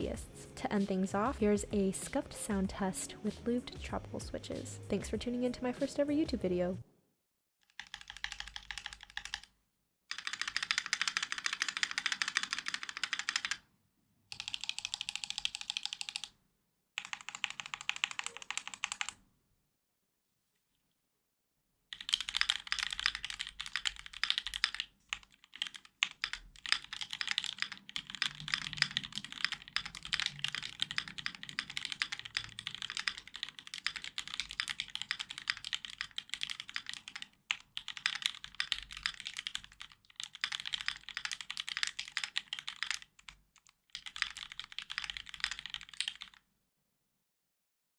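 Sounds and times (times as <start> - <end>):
mechanical keyboard typing: 7.6 - 9.5, 10.1 - 13.6, 14.3 - 16.4, 17.0 - 19.2, 21.9 - 46.4.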